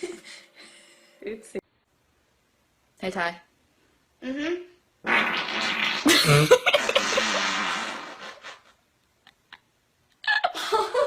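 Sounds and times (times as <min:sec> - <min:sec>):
long loud fart: 0:05.0 - 0:08.8.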